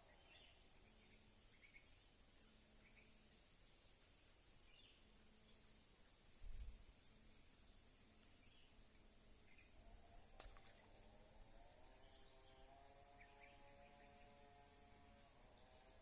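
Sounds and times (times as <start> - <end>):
faint low hum: 0.0 - 16.0.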